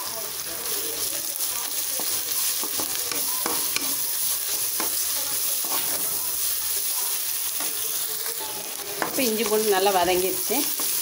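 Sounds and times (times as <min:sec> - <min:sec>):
onions frying in hot oil: 0:00.0 - 0:11.0
stirrer clinking against pan: 0:02.0 - 0:05.0.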